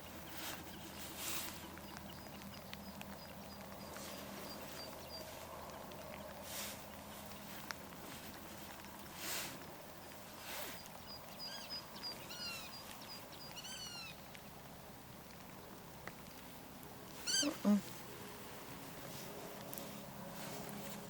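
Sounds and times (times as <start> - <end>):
faint outdoor background noise: 0.0 - 21.0
bird calling: 10.4 - 14.2, 17.2 - 17.9.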